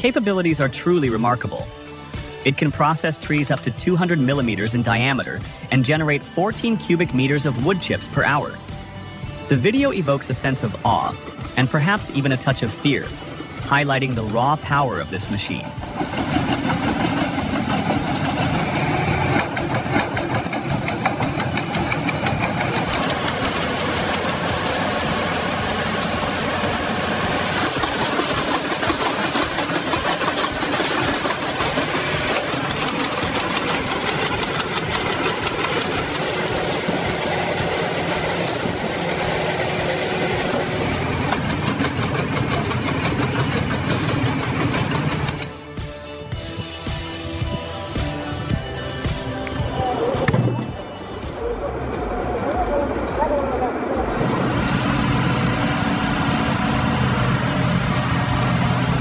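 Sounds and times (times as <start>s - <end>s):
engine-driven machine running: 10.2s - 45.8s, 47.5s - 59.0s.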